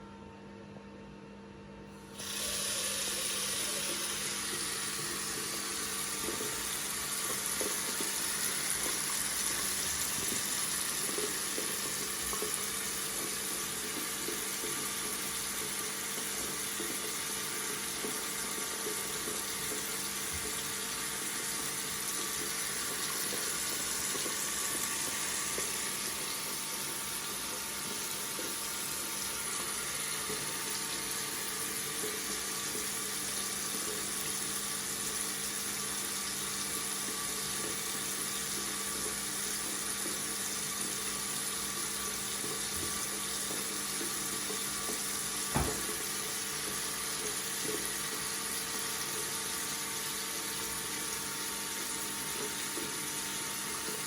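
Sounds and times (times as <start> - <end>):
water faucet running: 2.1 - 54.0.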